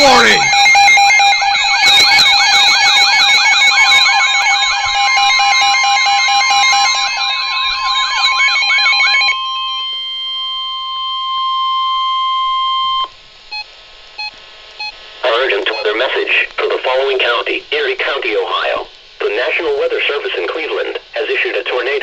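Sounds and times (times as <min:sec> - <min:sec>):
pulsing beep: 0:00.0 - 0:07.0
warbling siren sweep: 0:00.0 - 0:09.9
steady warning tone: 0:00.0 - 0:16.1.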